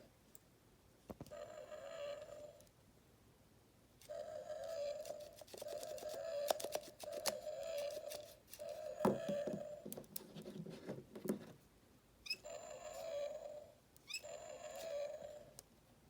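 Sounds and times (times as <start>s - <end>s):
toy dinosaur growl: 1.3s - 2.6s, 4.0s - 9.8s, 12.4s - 15.6s
plastic toy handling clicks: 4.6s - 8.8s.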